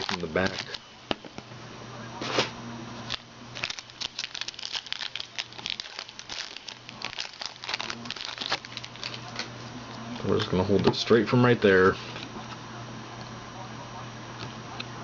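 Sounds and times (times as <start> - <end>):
plastic wrapping crinkling: 0.0 - 0.8, 3.1 - 10.4
low steady hum: 0.0 - 15.0.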